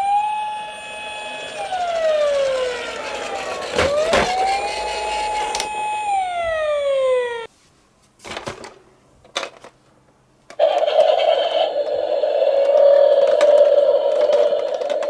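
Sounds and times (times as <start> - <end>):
toy electronic siren wail: 0.0 - 7.5, 10.6 - 15.0.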